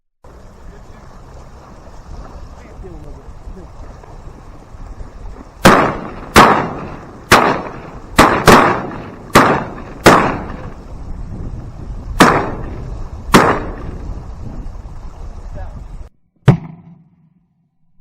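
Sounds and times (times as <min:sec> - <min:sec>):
shotguns firing: 0:05.6 - 0:10.8, 0:12.2 - 0:14.0, 0:16.5 - 0:17.1.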